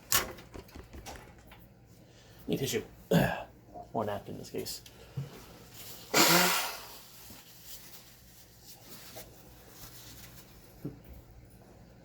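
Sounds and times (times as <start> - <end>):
man blowing nose: 6.0 - 7.4.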